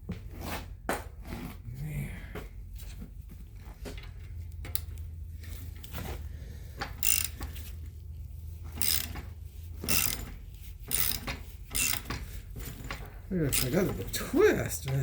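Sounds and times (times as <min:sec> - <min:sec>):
ratcheting metal clicks and scrapes: 0:03.9 - 0:15.0.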